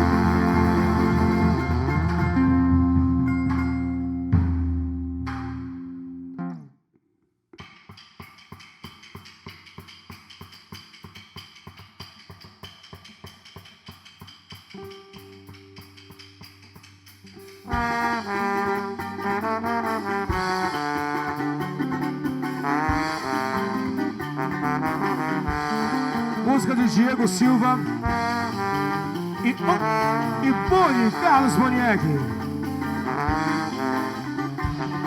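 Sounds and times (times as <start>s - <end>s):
ticking percussion pattern: 0.0s - 2.4s, 7.6s - 35.0s
live band playing: 0.0s - 6.0s, 7.9s - 35.0s
low bass notes: 0.0s - 6.3s, 29.6s - 34.9s.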